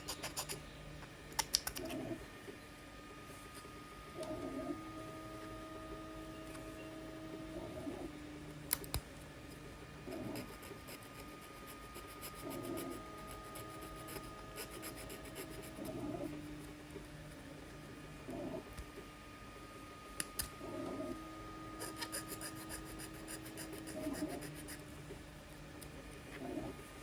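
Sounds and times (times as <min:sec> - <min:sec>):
sharp click: 0:01.3 - 0:01.9.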